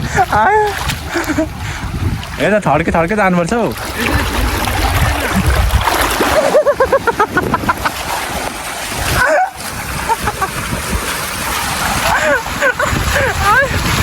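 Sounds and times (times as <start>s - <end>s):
low rumbling noise: 3.7s - 9.2s.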